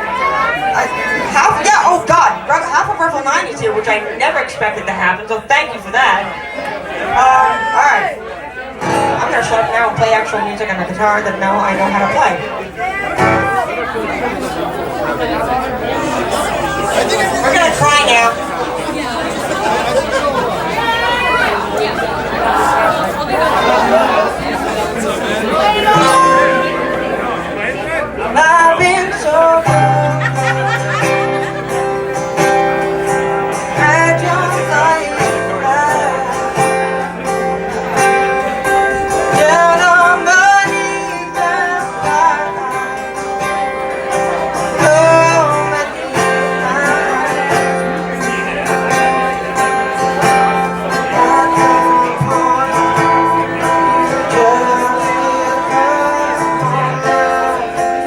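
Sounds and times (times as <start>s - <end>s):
guitar chords: 8.7s - 58.0s
person singing: 28.4s - 31.9s, 33.4s - 37.4s, 38.7s - 58.0s.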